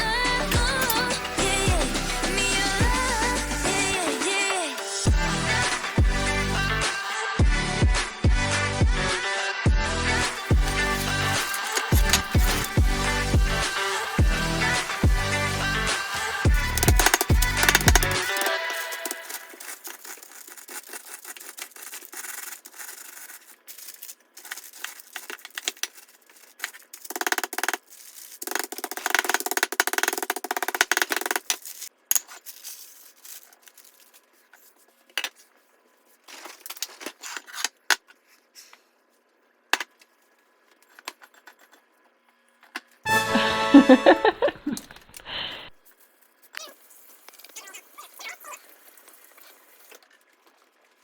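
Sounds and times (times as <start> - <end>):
rustling and rubbing: 10.2 - 29.6, 30.4 - 39.3, 45.7 - 51.0
clicks and taps: 16.7 - 19.2.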